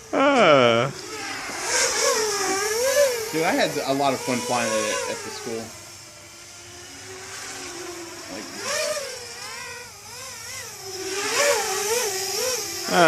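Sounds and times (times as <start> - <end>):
quadcopter motors whining: 0.0 - 13.0.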